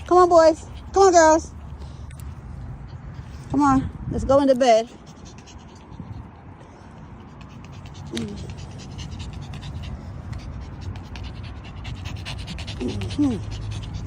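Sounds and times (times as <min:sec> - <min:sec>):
puppies panting: 0:00.0 - 0:14.0
puppy vocal sound: 0:07.0 - 0:14.0
puppies scratching clicks: 0:07.4 - 0:10.6.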